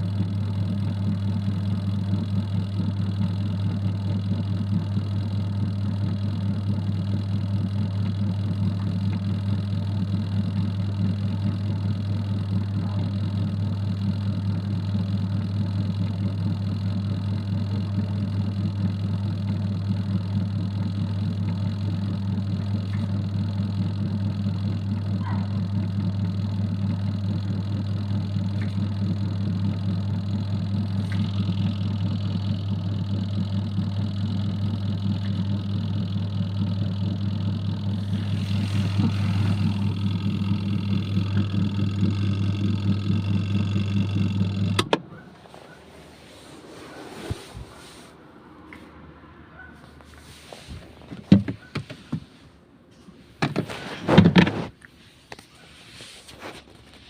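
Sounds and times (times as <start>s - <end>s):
washing machine motor hum: 0.0s - 45.8s.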